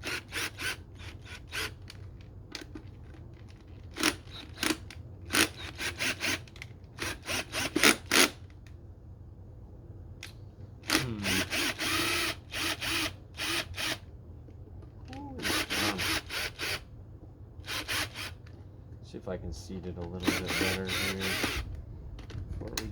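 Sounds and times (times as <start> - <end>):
plastic parts clicking and scraping: 1.0 - 8.8, 19.9 - 22.9.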